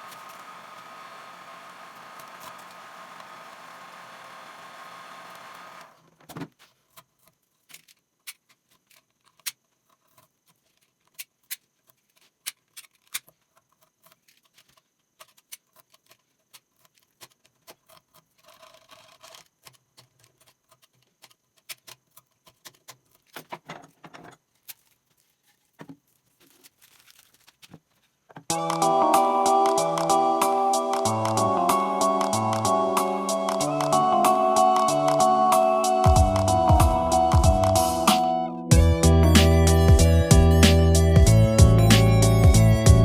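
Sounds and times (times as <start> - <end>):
steady blower hiss: 0.0 - 5.9.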